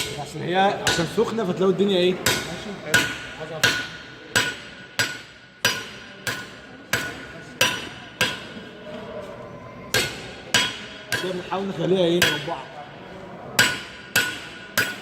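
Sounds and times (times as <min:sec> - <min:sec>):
hammer striking hot metal: 0:00.8 - 0:01.2, 0:02.2 - 0:08.6, 0:10.0 - 0:11.6, 0:12.2 - 0:12.6, 0:13.6 - 0:15.0.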